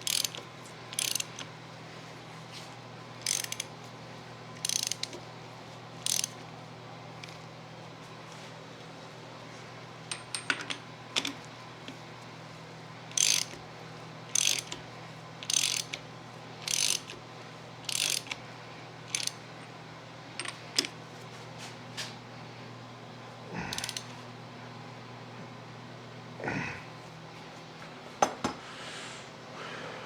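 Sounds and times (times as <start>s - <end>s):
ratchet wrench clicking: 0.0s - 1.5s, 3.2s - 3.7s, 4.6s - 5.2s, 6.0s - 6.4s, 13.1s - 13.6s, 14.3s - 14.8s, 15.4s - 16.0s, 16.6s - 17.2s, 17.8s - 18.4s, 19.1s - 19.4s, 23.7s - 24.1s.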